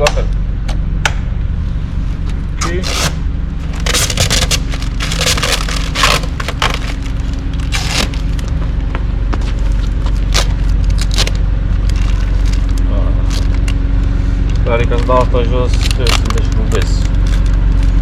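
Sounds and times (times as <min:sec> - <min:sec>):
steady low hum: 0:00.0 - 0:18.0
plastic scraping and rustling: 0:02.6 - 0:08.8, 0:09.4 - 0:13.8, 0:14.4 - 0:18.0.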